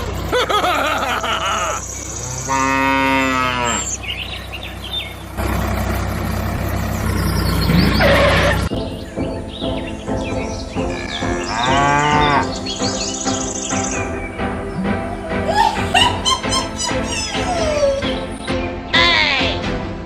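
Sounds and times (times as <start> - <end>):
bird chirps: 1.7 - 19.2
cow mooing: 2.2 - 4.0, 10.9 - 12.6.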